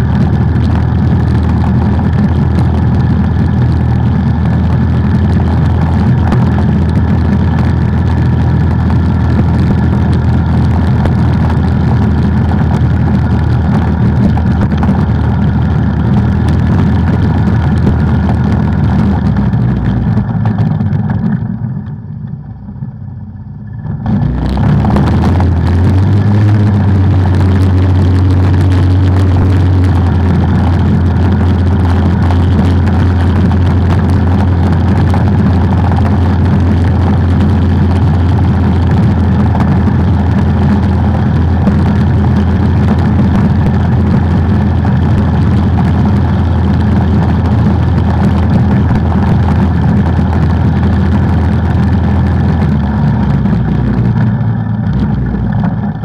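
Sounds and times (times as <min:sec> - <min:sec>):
atv engine running: 0:00.0 - 0:56.0.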